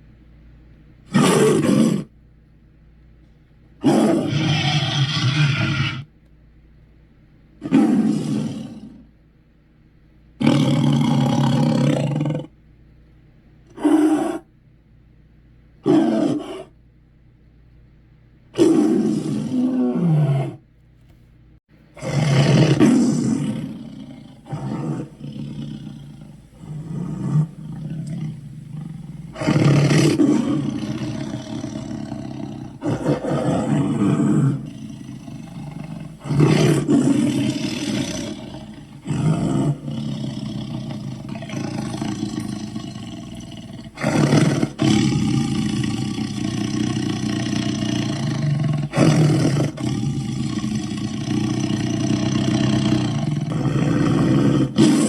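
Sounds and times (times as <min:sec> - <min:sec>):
dog growling deeply: 0:03.8 - 0:06.1, 0:07.7 - 0:09.1, 0:10.4 - 0:12.5, 0:22.0 - 0:55.0.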